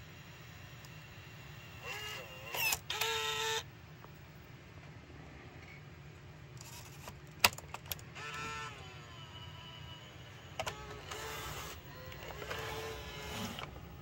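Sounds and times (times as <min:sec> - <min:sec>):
camcorder motors whirring: 0:00.0 - 0:03.7, 0:07.8 - 0:14.0.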